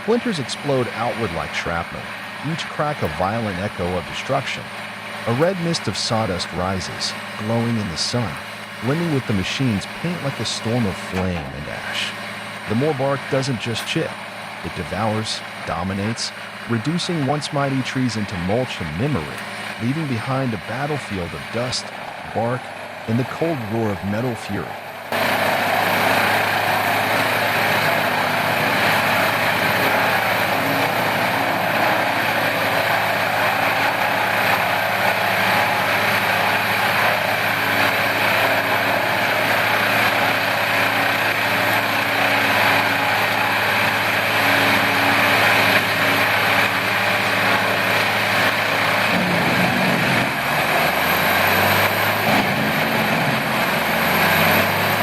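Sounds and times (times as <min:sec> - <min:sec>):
engine drone: 0:00.0 - 0:55.0.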